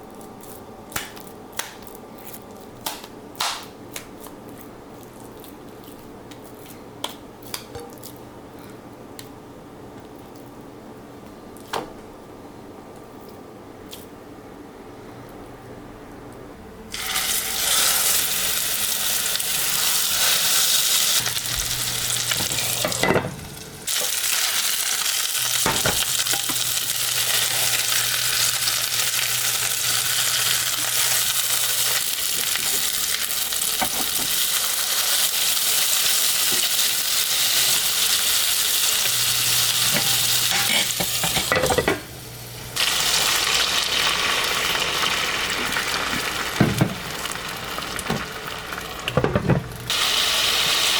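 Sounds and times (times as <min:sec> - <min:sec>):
patties sizzling in a frying pan: 0:17.0 - 0:49.1, 0:49.8 - 0:50.9.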